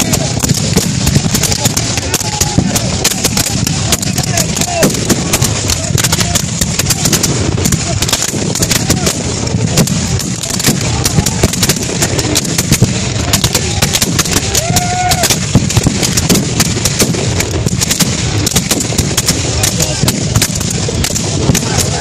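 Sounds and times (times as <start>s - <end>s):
distant shouting: 0.0s - 9.4s, 10.4s - 16.9s
musket fire: 0.0s - 22.0s
person yelling: 13.6s - 15.5s.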